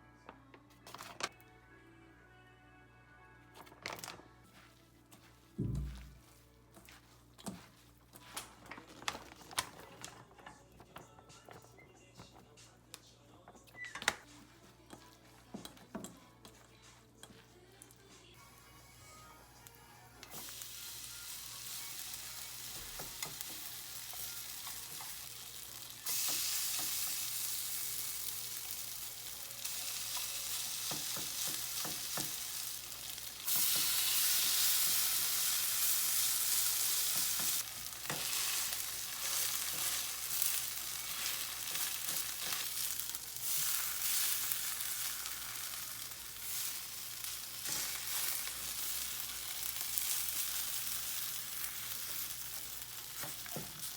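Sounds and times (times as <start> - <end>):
utensil tapping and scraping: 14.0 - 17.9
food sizzling in a pan: 18.4 - 53.9.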